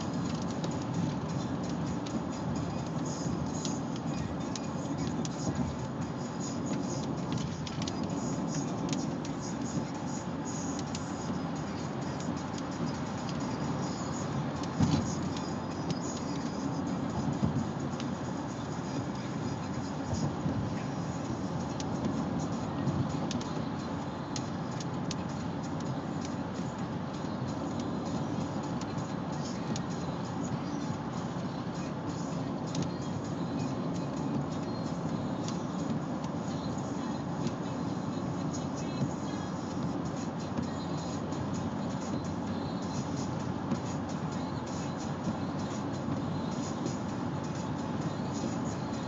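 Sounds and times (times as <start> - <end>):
raindrops ticking nearby: 0.0 - 48.9
raindrops ticking on hard surface: 0.1 - 5.9, 6.6 - 11.4.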